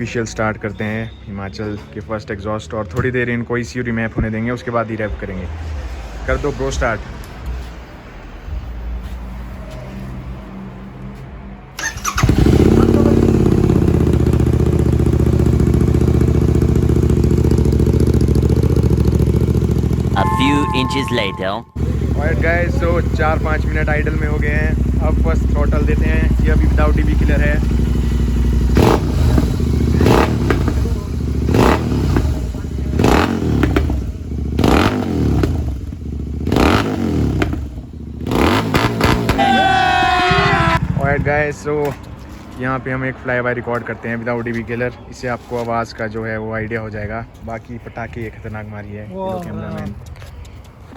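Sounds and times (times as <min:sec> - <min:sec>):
motorcycle engine starting and idling: 0:11.8 - 0:21.0, 0:21.8 - 0:39.4.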